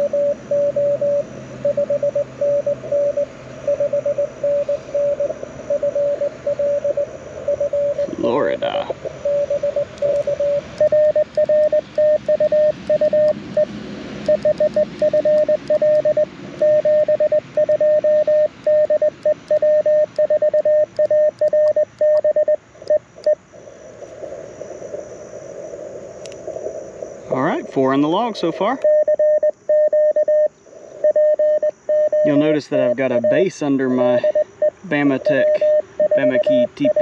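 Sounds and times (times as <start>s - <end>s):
morse code tone: 0.0s - 23.4s, 28.7s - 37.0s
faint radio hiss: 32.1s - 37.0s.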